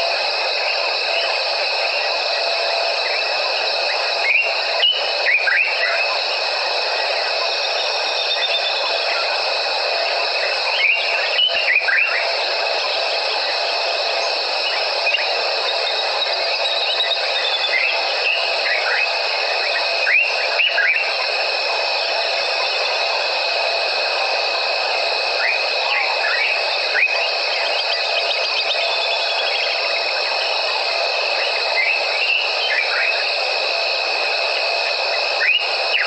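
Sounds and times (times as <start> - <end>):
high insect trilling: 0.0 - 36.0
falling whistled bird calls: 3.9 - 6.2, 10.7 - 13.0, 14.2 - 21.3.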